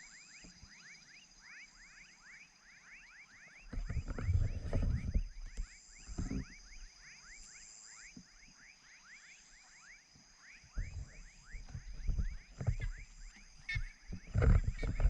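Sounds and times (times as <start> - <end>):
crickets trilling: 0.0 - 15.0
frogs chirping: 0.0 - 15.0
low rumbling thumps on microphone: 3.7 - 6.9, 10.8 - 15.0.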